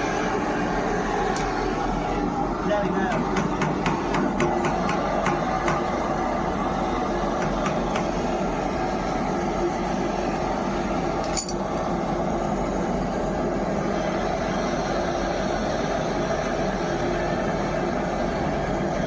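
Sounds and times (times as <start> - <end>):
machine running steadily: 0.0 - 19.0
light metallic clinks: 11.2 - 11.6.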